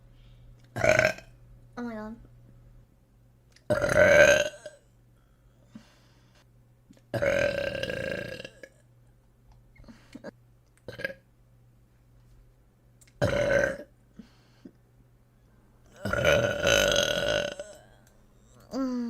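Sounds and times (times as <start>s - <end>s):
woman burping: 0.8s - 1.3s, 3.7s - 4.8s, 7.1s - 8.8s, 10.9s - 11.2s, 13.2s - 13.9s, 15.9s - 18.0s.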